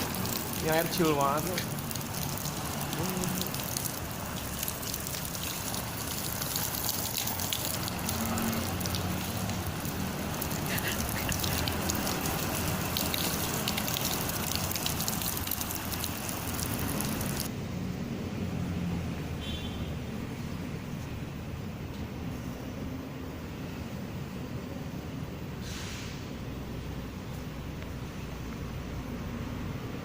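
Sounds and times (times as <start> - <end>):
water spattering on fabric: 0.0 - 17.5.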